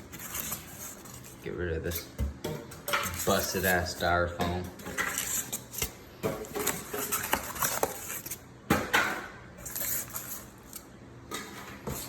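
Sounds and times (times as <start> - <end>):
rustling packaging: 0.0 - 1.5, 4.9 - 8.4, 9.6 - 10.9.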